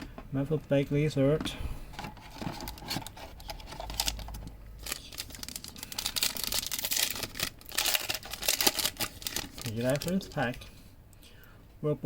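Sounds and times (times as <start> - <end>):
foil wrapper crinkling and tearing: 2.6 - 10.6.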